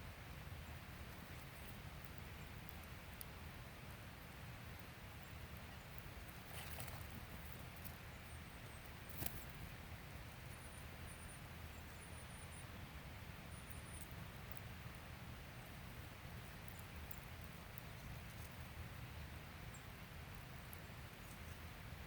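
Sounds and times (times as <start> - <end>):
soft rustling: 6.2 - 8.0.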